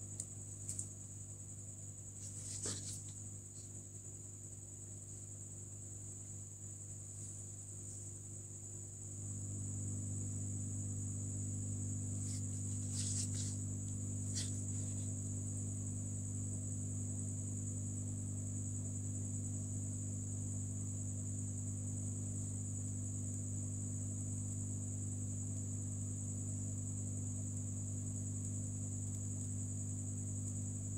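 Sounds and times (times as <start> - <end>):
hot-air station humming and whining: 6.8 - 19.0.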